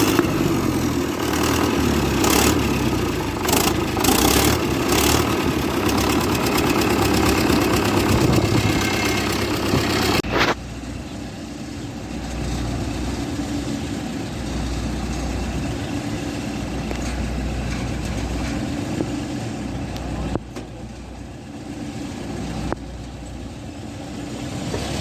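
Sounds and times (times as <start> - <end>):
combine harvester engine running: 0.0 - 25.0.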